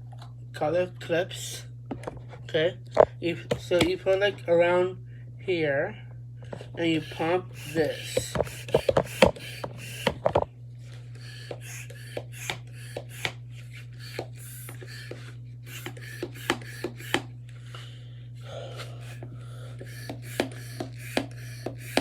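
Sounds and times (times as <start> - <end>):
steady low hum: 0.0 - 22.0
plastic pump clicking: 7.0 - 10.4, 11.2 - 17.3, 19.8 - 22.0.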